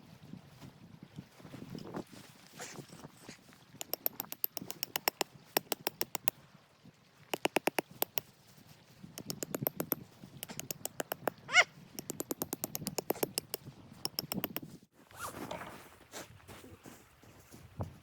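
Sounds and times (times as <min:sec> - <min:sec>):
rapid ticking clicks: 0:03.8 - 0:06.3, 0:07.4 - 0:08.3, 0:09.2 - 0:11.4, 0:12.0 - 0:14.7.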